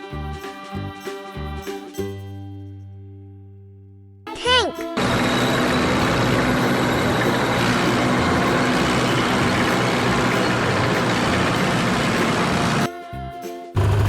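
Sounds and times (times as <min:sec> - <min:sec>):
faint steady hum: 0:05.0 - 0:12.9
tank engine rumbling: 0:05.0 - 0:12.9, 0:13.8 - 0:14.0.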